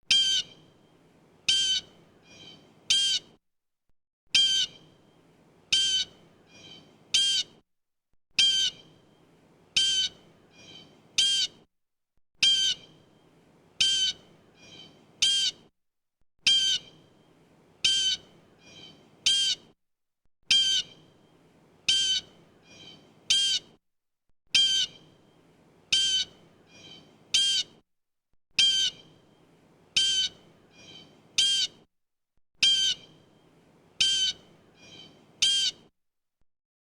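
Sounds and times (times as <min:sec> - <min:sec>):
blue jay squawking calls: 0:00.1 - 0:00.6, 0:01.5 - 0:03.3, 0:04.4 - 0:04.8, 0:05.7 - 0:07.5, 0:08.4 - 0:08.8, 0:09.8 - 0:11.6, 0:12.4 - 0:12.9, 0:13.8 - 0:15.6, 0:16.5 - 0:16.9, 0:17.8 - 0:19.6, 0:20.5 - 0:21.0, 0:21.9 - 0:23.7, 0:24.6 - 0:25.0, 0:25.9 - 0:27.7, 0:28.6 - 0:29.1, 0:30.0 - 0:31.8, 0:32.6 - 0:33.1, 0:34.0 - 0:35.8.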